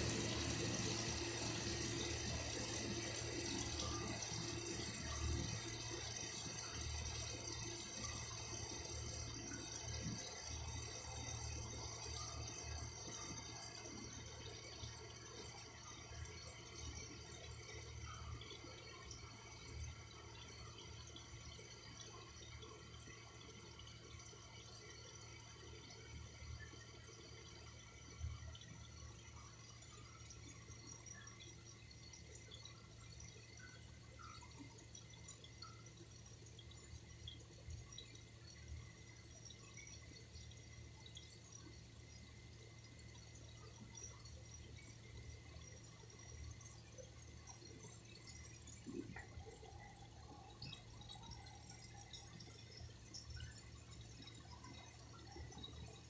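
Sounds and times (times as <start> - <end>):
faint running water: 0.0 - 56.0
water drips: 31.0 - 56.0.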